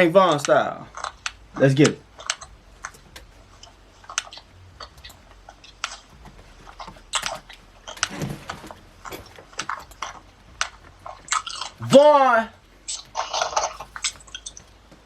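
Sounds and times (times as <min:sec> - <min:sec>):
computer keyboard and mouse clicks: 0:00.3 - 0:11.8.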